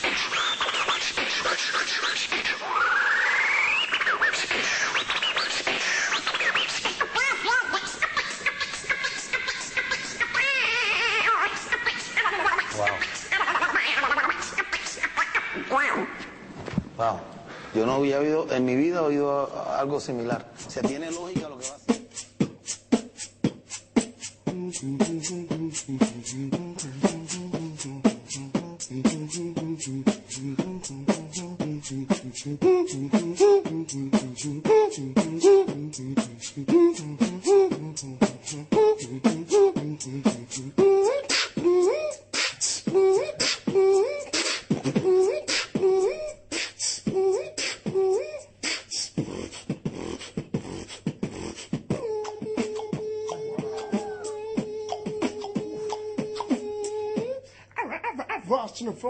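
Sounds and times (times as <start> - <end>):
beatboxing rhythm: 0.0 - 16.4, 20.0 - 59.0
hummed melody: 20.8 - 57.5.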